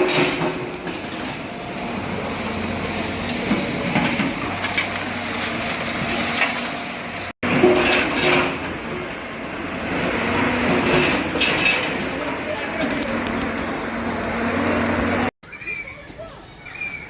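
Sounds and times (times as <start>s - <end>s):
knocks and crunching: 0.0s - 9.2s
machine engine hum: 0.0s - 15.3s.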